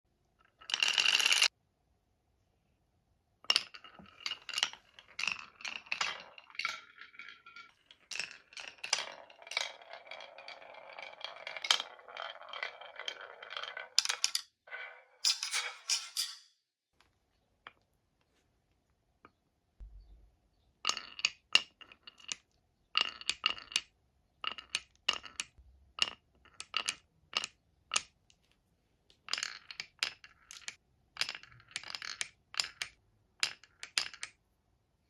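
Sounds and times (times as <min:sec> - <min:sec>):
marbles rolling on wooden run: 0:00.5 - 0:01.5, 0:03.5 - 0:15.5, 0:20.8 - 0:22.4, 0:23.0 - 0:28.2, 0:29.3 - 0:34.4.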